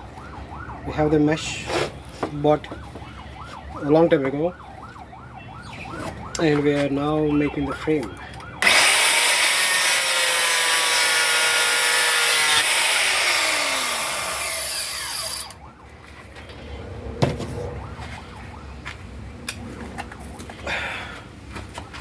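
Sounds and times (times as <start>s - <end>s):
power tool grinding steel: 8.6s - 15.6s.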